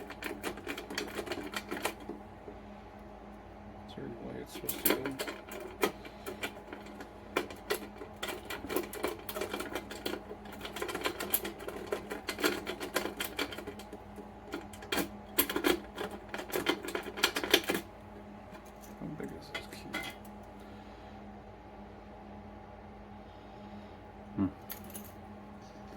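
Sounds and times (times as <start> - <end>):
lock picks clicking and scraping: 0.0 - 2.2, 4.6 - 17.9, 18.5 - 20.4.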